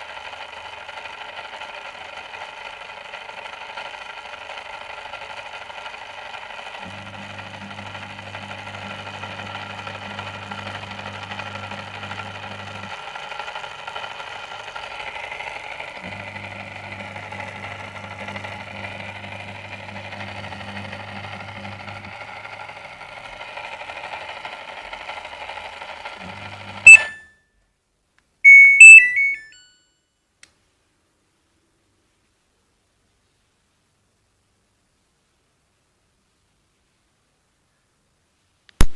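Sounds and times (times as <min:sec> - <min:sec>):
washing machine motor humming: 0:00.0 - 0:27.2
electronic beeps: 0:26.9 - 0:27.2, 0:28.5 - 0:29.6.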